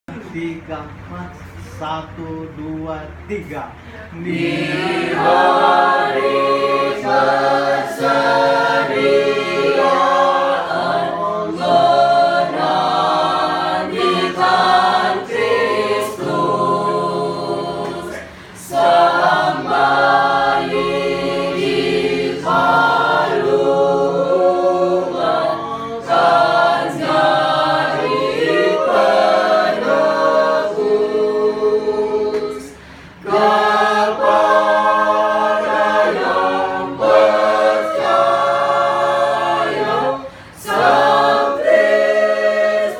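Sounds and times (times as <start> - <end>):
choir singing a hymn: 4.1 - 42.9
singers breathing: 18.2 - 18.7, 32.7 - 33.2, 40.2 - 40.6.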